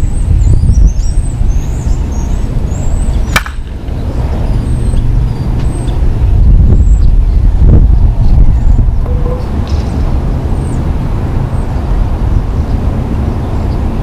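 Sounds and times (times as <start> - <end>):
wind buffeting microphone: 0.0 - 14.0
bat hitting softball: 3.3 - 3.8.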